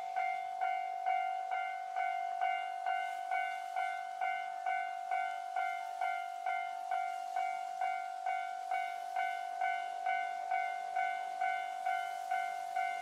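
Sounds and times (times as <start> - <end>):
level crossing warning bell: 0.0 - 13.0.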